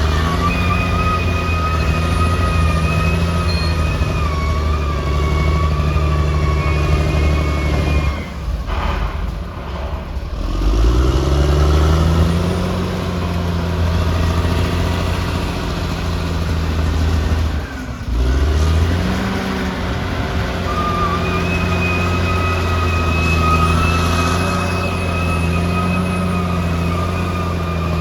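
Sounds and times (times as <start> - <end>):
bulldozer diesel engine revving: 0.0 - 28.0.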